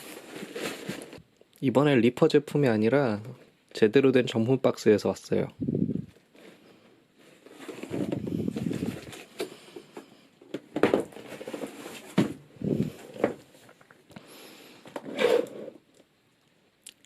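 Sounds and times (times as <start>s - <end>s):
cardboard box rustling and scraping: 0.0s - 1.2s, 7.2s - 10.0s, 10.7s - 13.8s.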